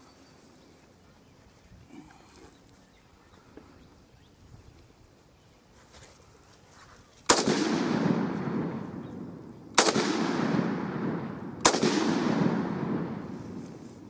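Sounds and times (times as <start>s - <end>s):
rifle shots: 7.3s - 13.8s
rolling echo of gunshots: 7.3s - 13.8s.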